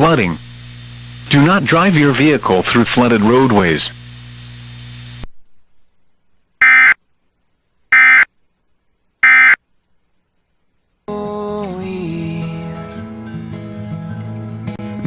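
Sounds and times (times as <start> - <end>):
screechy digital data tones: 6.6 - 7.0
music: 11.1 - 15.0.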